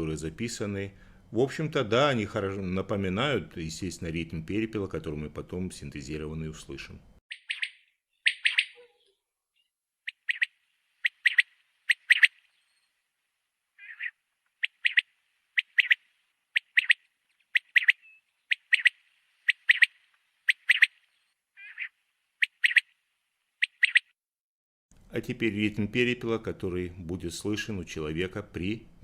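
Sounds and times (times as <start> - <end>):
quail singing: 7.3 - 12.8, 13.8 - 22.9, 23.6 - 24.1.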